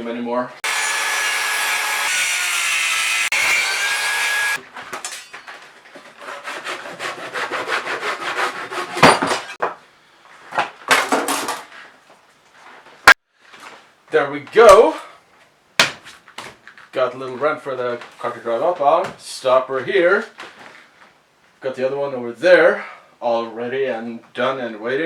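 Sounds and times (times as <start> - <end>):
power saw whining through wood: 0.6 - 4.6
rasping strokes on wood: 6.2 - 9.0.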